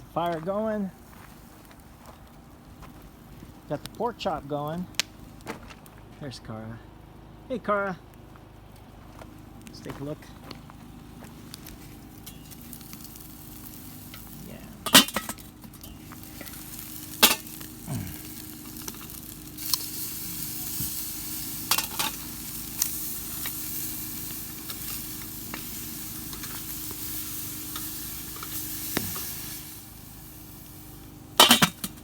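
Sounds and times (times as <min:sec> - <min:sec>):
meat sizzling over fire: 0:06.9 - 0:32.0.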